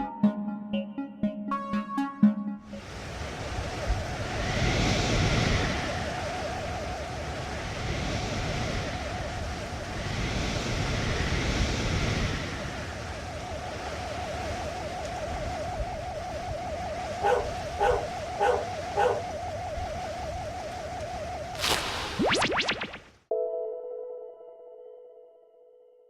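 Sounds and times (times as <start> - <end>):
rushing surf noise: 2.7 - 19.4, 21.5 - 23.0
wavering mid-pitched tone: 15.0 - 23.6.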